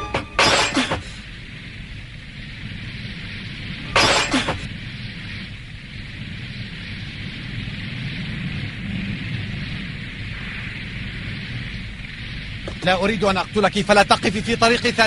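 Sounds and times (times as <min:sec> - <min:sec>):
cartoon crash: 0:00.0 - 0:01.1
low rumble: 0:00.0 - 0:15.0
steady background hiss: 0:00.0 - 0:15.0.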